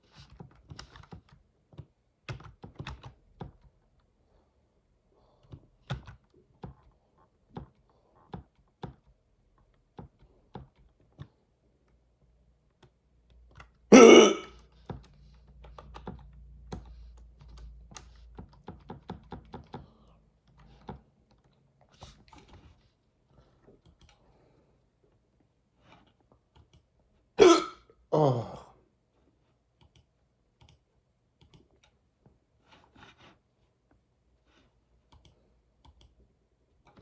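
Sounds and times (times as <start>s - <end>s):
keyboard typing: 0.2s - 3.8s
loud hiccup: 13.9s - 14.6s, 27.4s - 28.6s.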